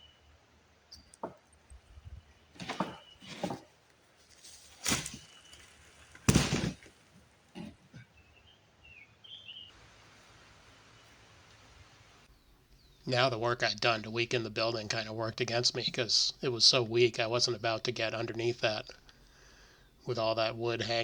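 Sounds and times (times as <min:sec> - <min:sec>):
small bird chirping: 0:00.0 - 0:03.4, 0:08.2 - 0:09.8, 0:12.2 - 0:13.1.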